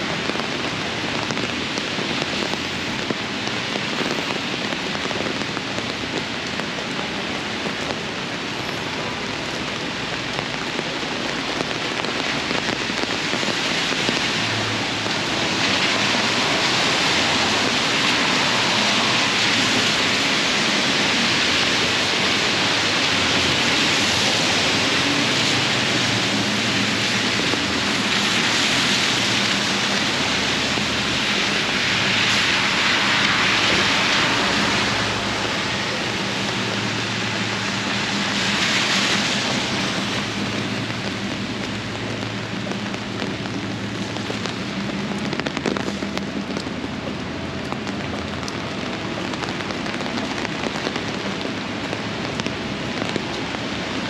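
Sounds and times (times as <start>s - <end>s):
heavy rain splashing: 0.0s - 54.0s.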